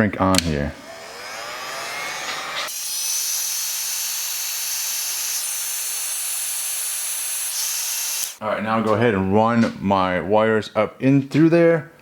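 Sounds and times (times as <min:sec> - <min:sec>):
heat gun blowing air: 0:00.4 - 0:08.4.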